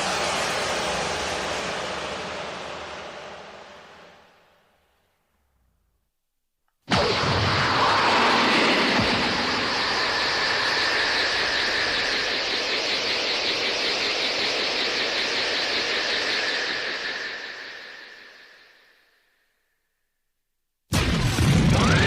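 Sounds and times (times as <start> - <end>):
rushing hiss with high tone: 7.5 - 19.2.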